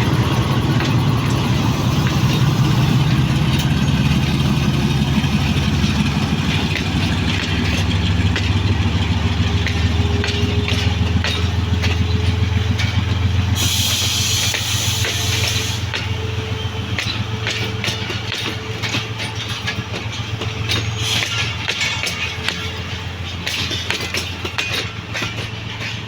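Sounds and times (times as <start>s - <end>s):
locomotive engine droning: 0.0s - 26.0s
air hiss: 13.6s - 15.9s.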